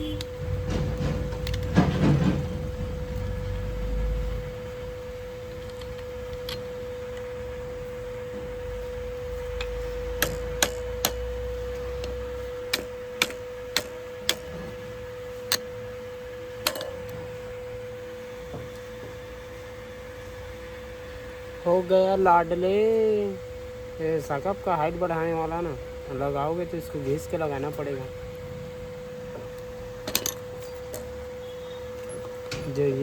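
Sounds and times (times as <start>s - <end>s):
steady hum: 0.0s - 33.0s
tools knocking: 0.6s - 2.6s, 9.6s - 11.3s.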